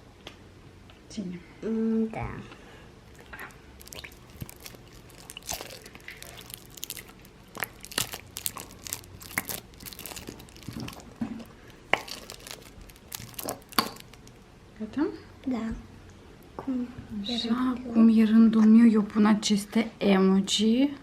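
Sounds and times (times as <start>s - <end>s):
packaging crinkling and clicking: 3.2s - 14.4s.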